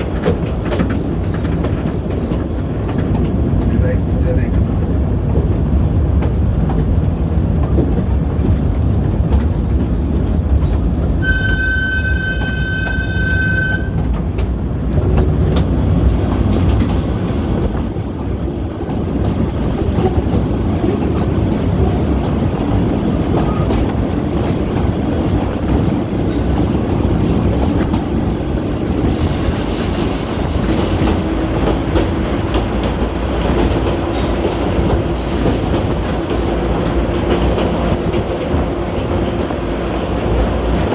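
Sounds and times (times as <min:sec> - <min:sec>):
train wheels rumbling on rails: 0:00.0 - 0:40.9
train whistle blast: 0:11.2 - 0:14.1.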